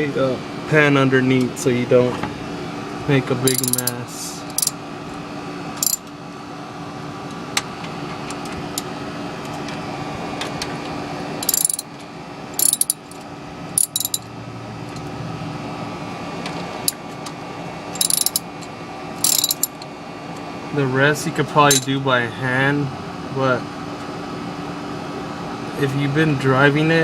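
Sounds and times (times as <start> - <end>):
ratchet wrench clicking: 3.5 - 3.9, 4.5 - 4.7, 5.8 - 6.1, 11.4 - 11.8, 12.6 - 13.2, 13.8 - 14.2, 18.0 - 18.5, 19.2 - 19.8.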